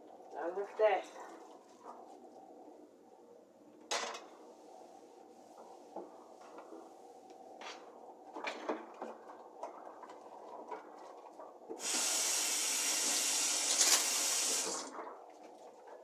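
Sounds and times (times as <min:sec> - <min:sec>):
tap water running into sink: 0:11.8 - 0:14.9.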